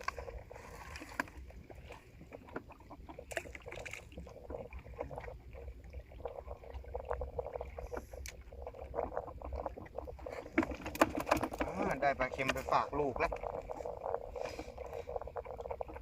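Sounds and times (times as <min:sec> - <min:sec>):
water lapping against boat hull: 0:00.0 - 0:16.0.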